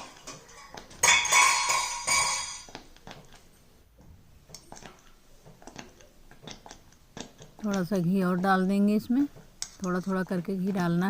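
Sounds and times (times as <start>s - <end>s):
metal utensils clinking on a pan: 0.0s - 2.7s
ringing metallic clatter: 0.0s - 2.7s.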